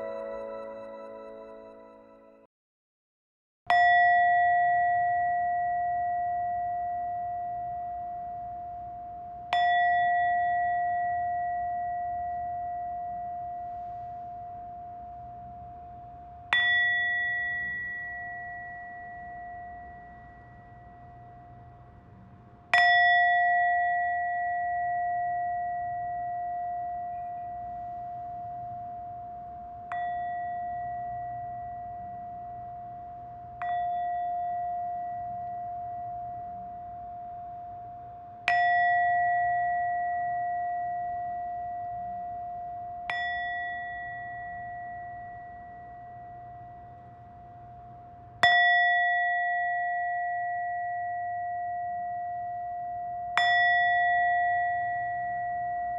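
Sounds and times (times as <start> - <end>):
bell ringing: 0.0 - 2.4.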